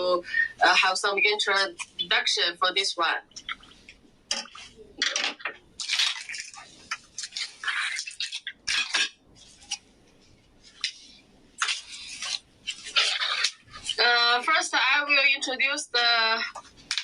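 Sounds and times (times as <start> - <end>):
objects clicking and knocking: 4.3 - 9.8
rustling: 5.8 - 14.0.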